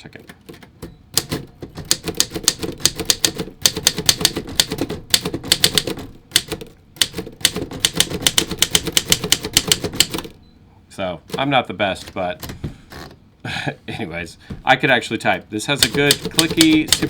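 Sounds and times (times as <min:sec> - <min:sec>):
manual typewriter typing: 0:00.0 - 0:10.4, 0:11.2 - 0:13.1, 0:15.6 - 0:17.0.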